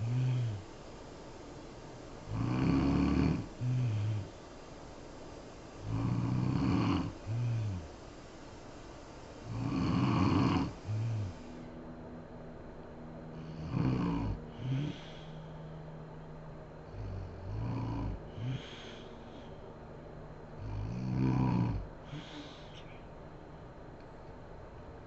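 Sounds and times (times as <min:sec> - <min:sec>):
woman snoring: 0:00.0 - 0:00.8, 0:02.2 - 0:04.4, 0:05.8 - 0:08.0, 0:09.4 - 0:11.7, 0:13.4 - 0:15.4, 0:16.9 - 0:19.5, 0:20.6 - 0:22.8.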